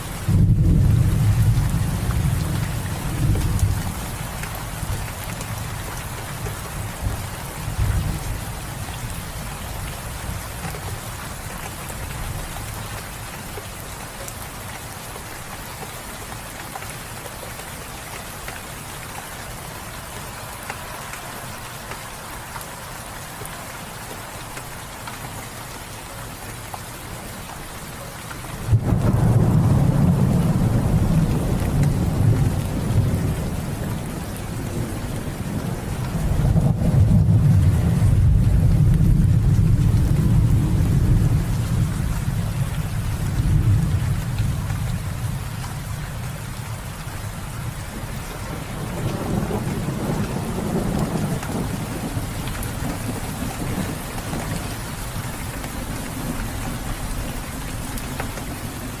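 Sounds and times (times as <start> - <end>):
steady rain falling: 0.0 - 59.0
rolling thunder: 0.2 - 4.0, 28.6 - 45.5, 48.5 - 55.2.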